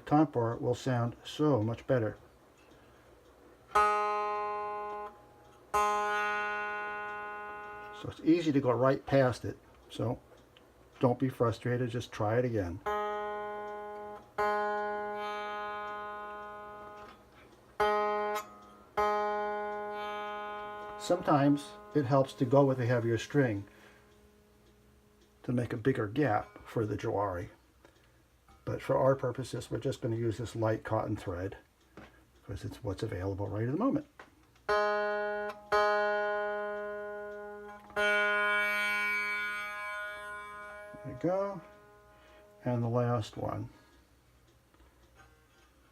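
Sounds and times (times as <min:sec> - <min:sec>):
buzzing plucked string: 0:03.7 - 0:08.9, 0:12.8 - 0:25.4, 0:34.6 - 0:42.7.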